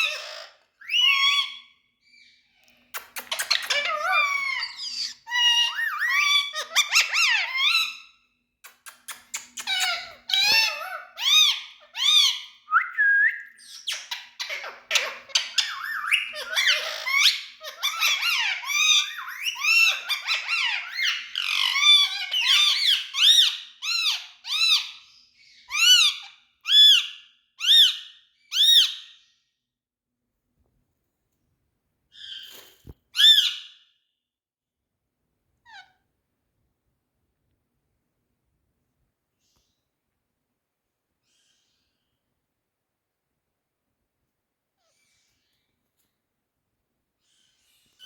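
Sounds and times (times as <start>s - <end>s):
parakeet squeaky calls: 0.0s - 1.7s, 3.0s - 8.2s, 8.8s - 12.7s, 13.6s - 29.2s, 33.2s - 33.8s, 35.7s - 36.0s.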